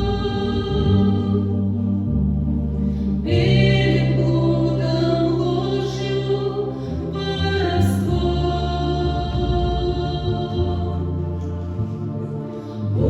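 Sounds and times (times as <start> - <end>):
steady low accompaniment: 0.0 - 13.0
choir singing long notes: 3.2 - 13.0.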